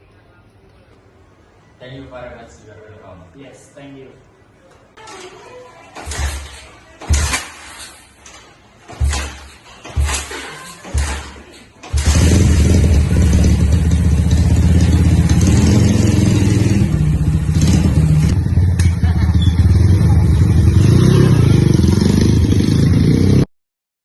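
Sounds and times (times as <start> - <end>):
motorcycle engine running: 11.9 - 23.4.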